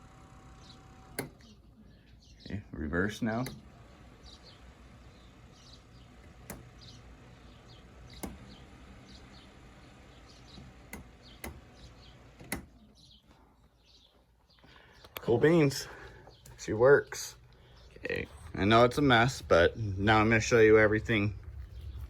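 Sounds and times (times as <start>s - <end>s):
electric motor humming: 0.0s - 1.5s, 3.3s - 12.7s
small birds chirping: 0.0s - 22.0s
sharp clicks: 1.1s - 1.6s, 3.4s - 4.4s, 6.2s - 7.0s, 8.1s - 8.6s, 10.5s - 12.7s.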